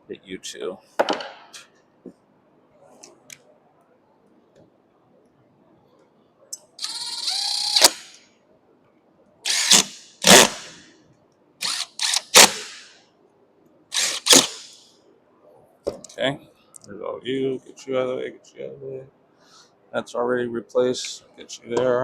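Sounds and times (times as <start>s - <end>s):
cordless driver whirring: 6.8s - 8.2s, 9.5s - 10.7s, 11.6s - 12.8s, 14.0s - 14.8s.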